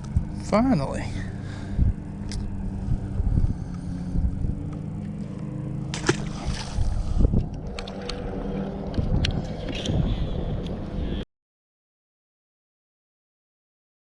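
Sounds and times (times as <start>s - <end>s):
boat motor humming: 0.0s - 11.2s
water: 0.0s - 11.2s
wind noise: 1.2s - 4.8s, 6.0s - 11.2s.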